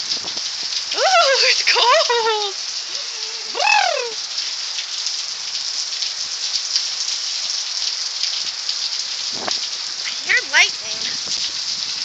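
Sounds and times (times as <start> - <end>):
rain pattering: 0.0 - 12.0.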